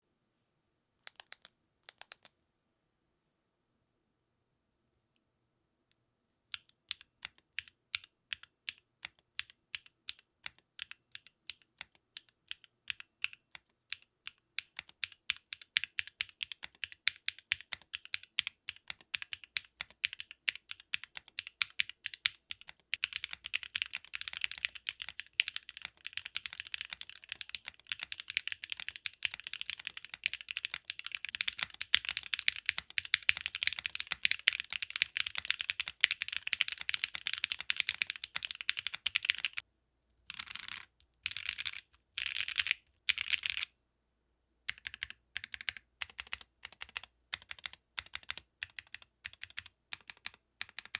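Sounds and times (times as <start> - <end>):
mechanical keyboard typing: 1.1 - 2.3, 6.5 - 39.6, 40.3 - 43.7, 44.7 - 50.9.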